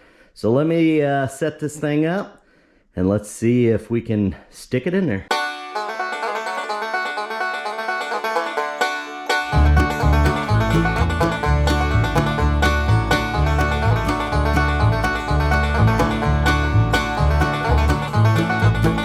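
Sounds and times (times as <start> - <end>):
banjo-led bluegrass music: 5.3 - 19.0.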